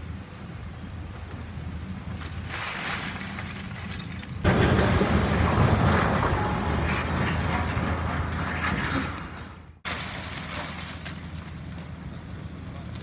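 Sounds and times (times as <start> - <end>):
masonry rumbling down: 2.2 - 12.0.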